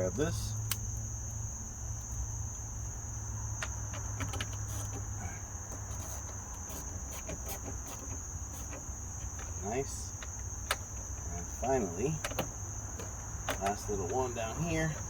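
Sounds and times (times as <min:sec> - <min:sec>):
hand tools clicking and tapping: 0:03.6 - 0:15.0.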